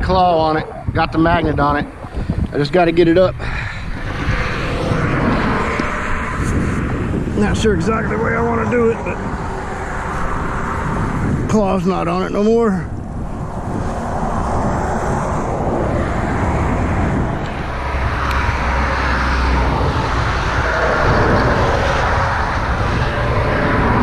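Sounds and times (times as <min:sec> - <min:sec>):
deep rumble: 0:00.0 - 0:24.0
road traffic noise: 0:00.0 - 0:24.0.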